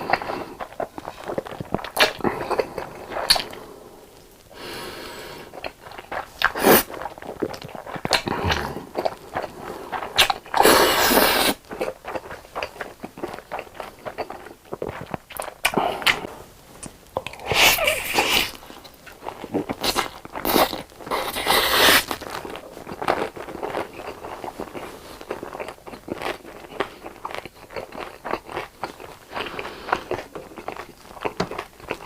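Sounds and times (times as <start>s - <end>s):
crunchy chewing: 0.0s - 4.5s, 5.4s - 32.0s.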